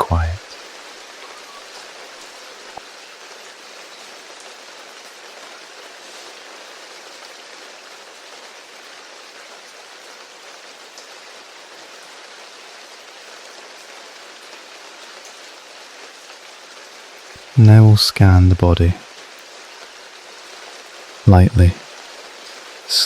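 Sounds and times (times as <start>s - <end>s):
rain hissing: 17.4s - 19.0s, 22.5s - 23.0s.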